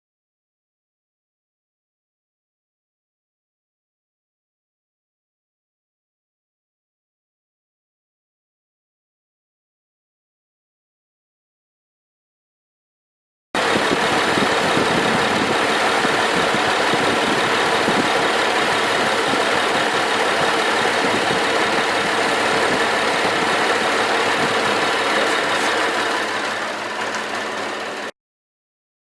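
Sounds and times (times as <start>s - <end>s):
car engine idling: 13.6s - 28.1s.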